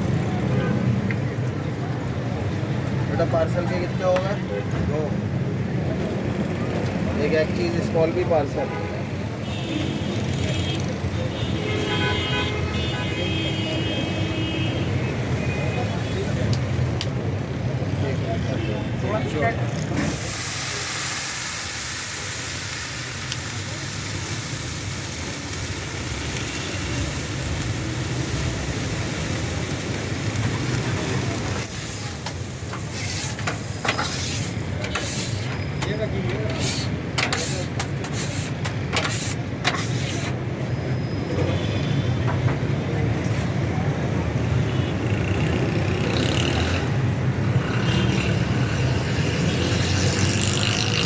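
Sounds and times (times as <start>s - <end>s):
road traffic rumble: 0.0s - 51.0s
hiss: 20.0s - 35.6s, 36.5s - 40.4s.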